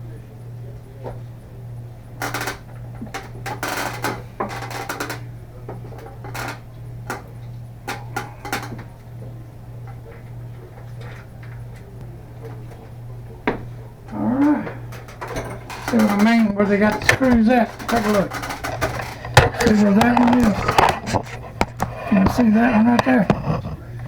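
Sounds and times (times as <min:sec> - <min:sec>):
steady low hum: 0:00.0 - 0:24.0
light fixture clinking and rattling: 0:12.4 - 0:21.9.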